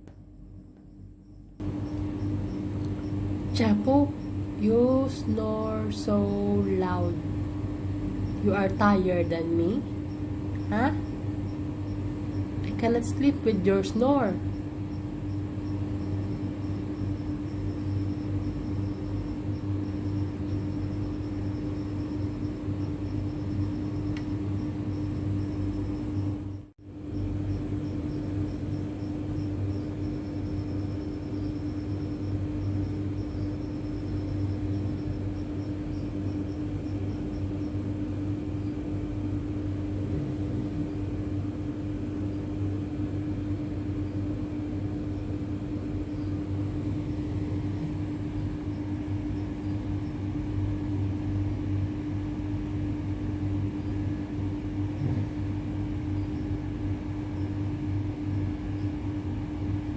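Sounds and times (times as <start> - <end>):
steady machine hum: 0.0 - 59.9.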